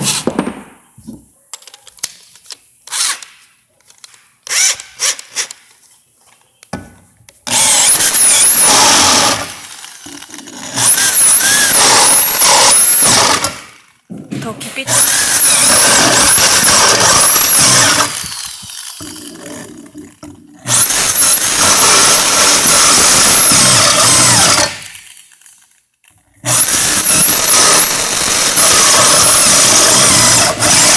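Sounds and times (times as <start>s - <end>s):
power drill motor: 4.0s - 5.7s, 7.5s - 13.8s, 14.8s - 25.8s, 26.4s - 30.9s
drill bit squealing: 7.5s - 9.5s, 10.7s - 13.5s, 14.9s - 19.4s, 20.7s - 24.9s, 26.5s - 30.9s.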